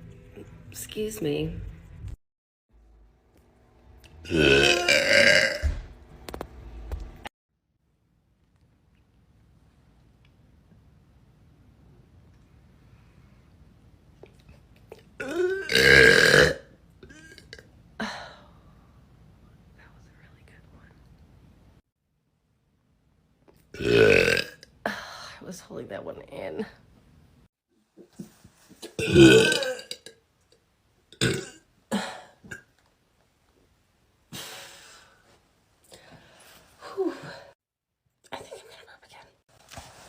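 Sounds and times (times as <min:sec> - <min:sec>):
person burping: 0:04.2 - 0:05.8, 0:14.9 - 0:18.2, 0:23.7 - 0:24.7, 0:28.8 - 0:30.2, 0:31.1 - 0:32.7.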